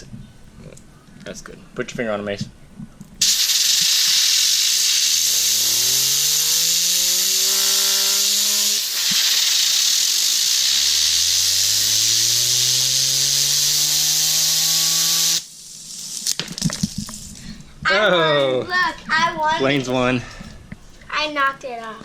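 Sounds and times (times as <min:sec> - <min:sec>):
compressed air hissing: 0:03.2 - 0:16.3
fidget spinners whirring: 0:03.2 - 0:17.5.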